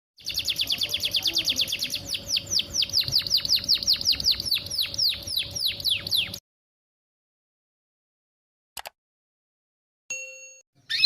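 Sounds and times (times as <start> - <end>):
canary chirping: 0.2 - 6.4, 10.8 - 11.0.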